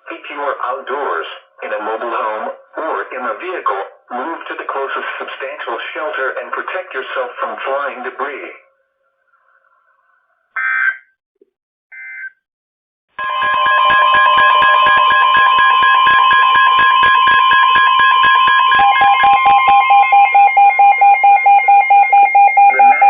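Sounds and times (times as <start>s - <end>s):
rapidly pulsing alarm beeps: 13.2s - 23.0s
steady warning alarm tone: 13.2s - 23.0s.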